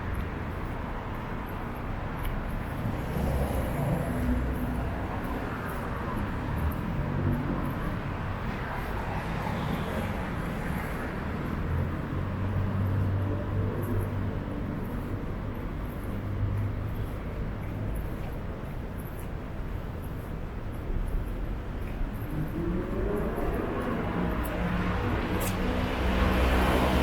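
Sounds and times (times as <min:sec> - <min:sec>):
vehicles passing: 0:00.0 - 0:27.0.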